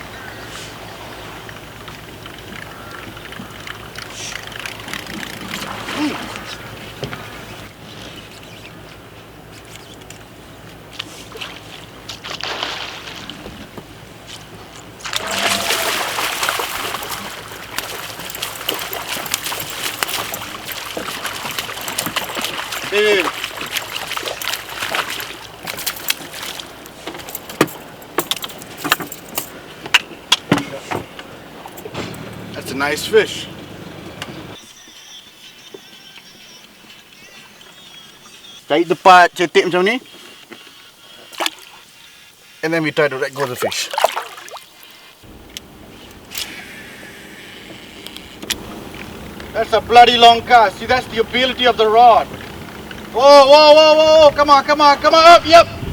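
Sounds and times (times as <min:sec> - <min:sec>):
boat motor humming: 0:00.0 - 0:12.3, 0:13.4 - 0:34.6, 0:43.4 - 0:55.9
water splashing: 0:00.7 - 0:07.9, 0:10.8 - 0:29.5, 0:41.2 - 0:41.9, 0:43.0 - 0:55.9.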